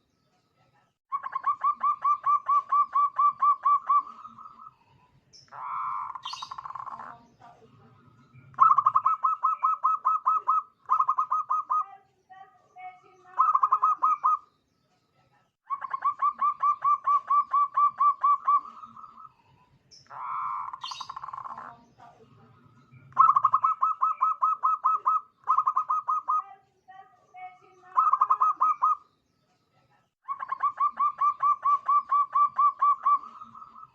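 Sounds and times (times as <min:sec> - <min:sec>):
dove cooing: 0:01.1 - 0:04.7, 0:08.5 - 0:11.9, 0:13.3 - 0:14.4, 0:15.7 - 0:19.3, 0:23.0 - 0:26.4, 0:27.9 - 0:29.0, 0:30.3 - 0:33.9.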